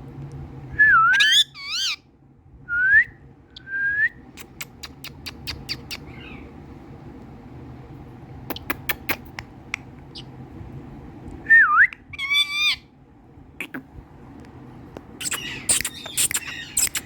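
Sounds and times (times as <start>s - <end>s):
parakeet warbling whistled calls: 1.0s - 2.0s, 12.1s - 12.9s, 15.2s - 17.0s
sharp clicks: 15.2s - 17.0s.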